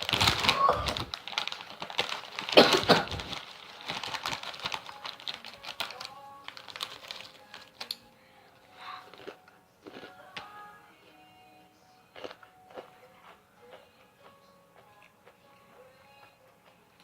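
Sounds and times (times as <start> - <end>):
crunchy snack being chewed: 8.9 - 10.6, 12.1 - 16.8.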